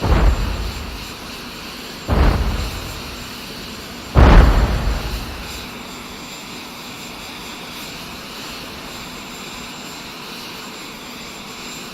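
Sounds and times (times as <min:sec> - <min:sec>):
jet aircraft noise: 0:00.0 - 0:05.9.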